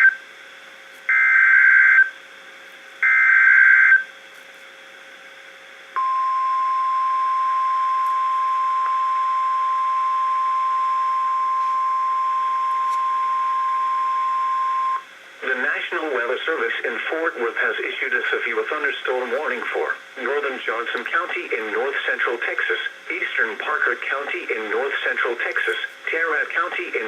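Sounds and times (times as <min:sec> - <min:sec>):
steady warning alarm tone: 0:01.1 - 0:02.1, 0:03.0 - 0:04.1, 0:06.0 - 0:15.1.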